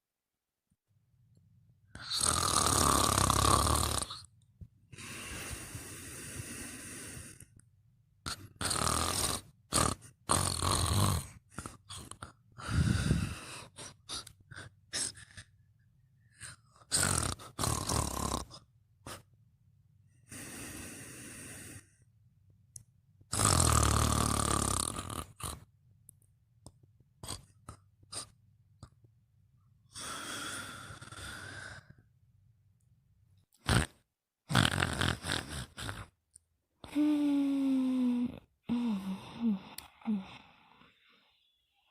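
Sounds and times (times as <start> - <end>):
person snoring: 1.9 - 4.3, 4.9 - 7.6, 8.3 - 15.5, 16.3 - 19.3, 20.2 - 22.0, 23.3 - 25.7, 27.2 - 28.4, 29.9 - 32.1, 33.6 - 36.2, 36.8 - 41.5
snorts and puffs of breath: 4.9 - 7.6, 8.3 - 15.5, 20.2 - 22.0.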